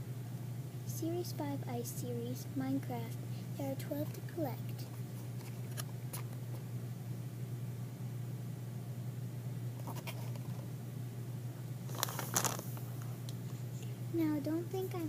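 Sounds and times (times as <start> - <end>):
low electrical hum: 0.0 - 15.0
plastic packaging crinkling: 11.9 - 13.0.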